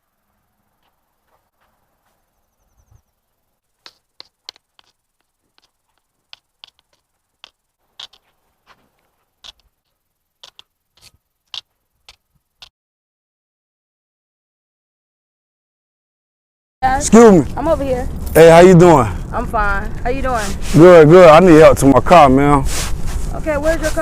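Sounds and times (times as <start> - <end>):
faint hiss: 16.8 - 24.0.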